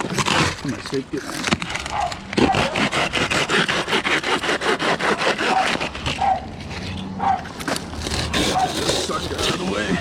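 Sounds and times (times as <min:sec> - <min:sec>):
hand saw cutting palm fronds: 0:00.0 - 0:06.8, 0:07.6 - 0:10.0.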